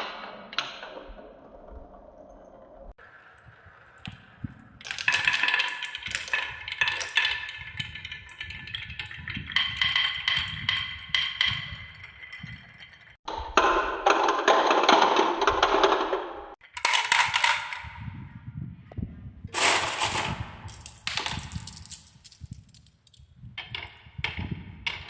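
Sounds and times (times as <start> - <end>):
rushing rolling rattle: 3.0 - 13.2
marbles clattering down a run: 3.3 - 13.2, 16.8 - 18.1, 19.6 - 25.0.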